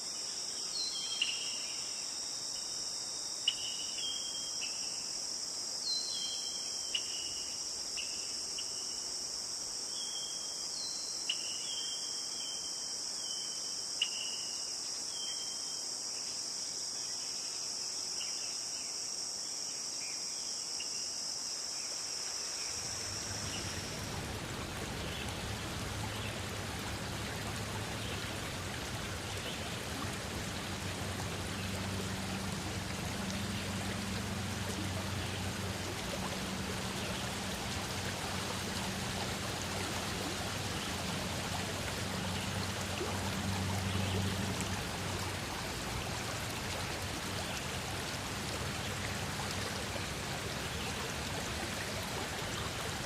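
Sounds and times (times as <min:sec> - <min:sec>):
crickets chorus: 0:00.0 - 0:53.0
flowing water rushing: 0:22.5 - 0:53.0.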